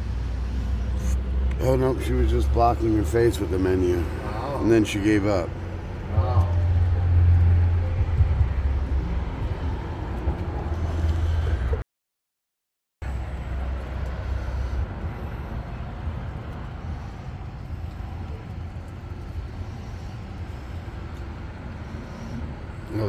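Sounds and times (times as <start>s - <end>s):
street traffic rumble: 0.0s - 11.8s, 13.0s - 23.0s.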